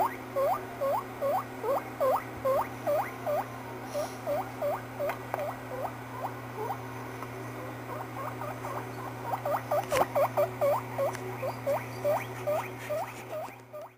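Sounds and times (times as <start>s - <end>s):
guinea pig squeaking: 0.0s - 6.8s, 7.6s - 13.9s
steady low hum: 0.0s - 13.9s.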